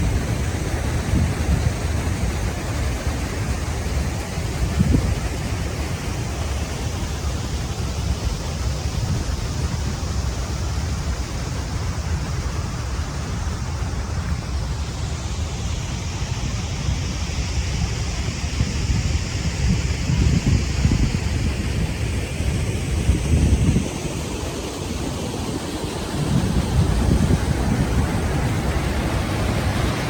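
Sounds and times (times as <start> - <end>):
waterfall roaring: 0.0 - 30.0.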